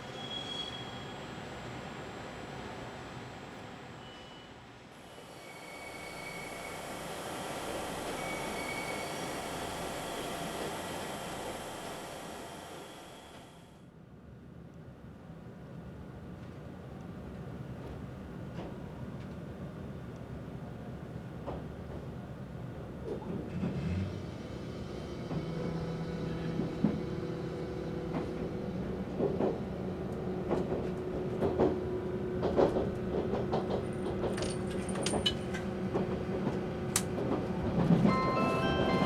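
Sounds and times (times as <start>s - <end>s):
train rumble: 21.3s - 39.0s
bell-like announcement chime: 38.1s - 39.0s.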